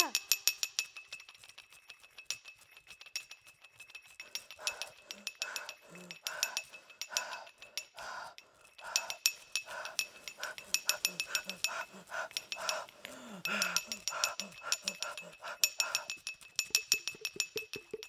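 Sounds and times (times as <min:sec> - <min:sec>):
soft rhythmic pulsing: 0:00.0 - 0:18.0
glass bottle struck with stick: 0:13.5 - 0:18.0.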